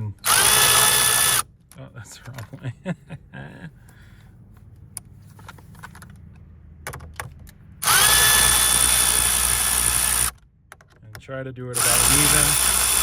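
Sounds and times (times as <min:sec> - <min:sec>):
cordless drill whining: 0:00.2 - 0:01.4, 0:07.8 - 0:10.3, 0:11.8 - 0:13.0
handling clicks and rattles: 0:04.9 - 0:07.6.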